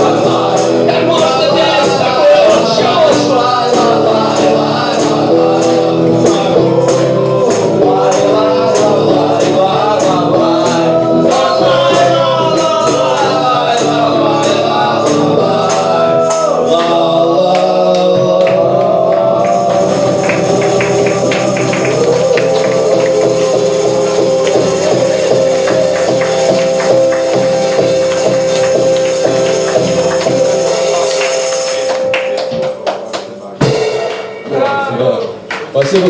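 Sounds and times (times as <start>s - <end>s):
voices singing: 0.0s - 32.1s
acoustic band playing: 0.0s - 36.0s
tambourine jingling: 19.4s - 34.5s.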